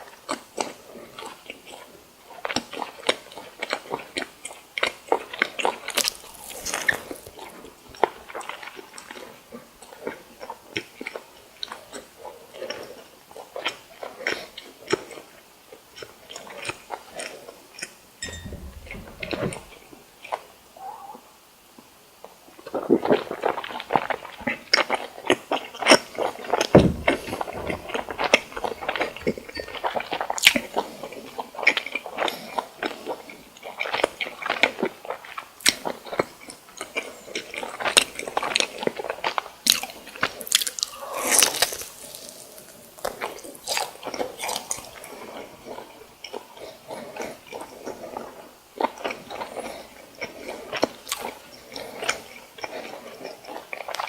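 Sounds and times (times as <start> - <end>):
crunching crispy fried food: 0.0 - 17.9, 30.0 - 54.0
wet chewing: 0.0 - 17.9, 22.6 - 54.0.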